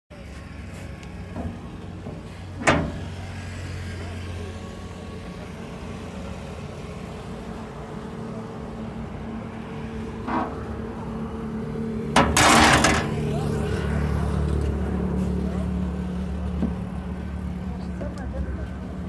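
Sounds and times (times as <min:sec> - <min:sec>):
sharp metallic clank: 0:12.2 - 0:13.2.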